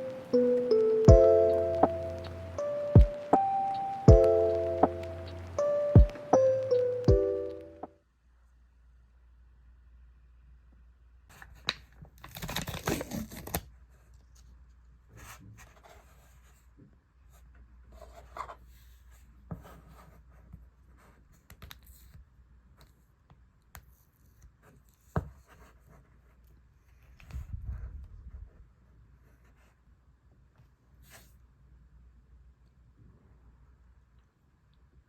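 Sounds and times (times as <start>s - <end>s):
faint steady hum: 0.0s - 11.4s
tearing or rustling: 12.2s - 13.7s.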